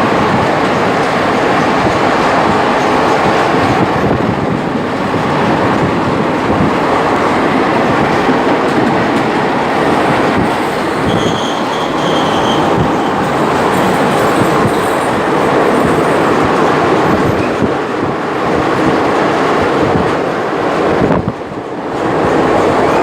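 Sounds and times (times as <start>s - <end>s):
train rumbling through tunnel: 0.0s - 23.0s
wheels clattering on rails: 0.0s - 23.0s
thin high squeal: 11.0s - 15.7s.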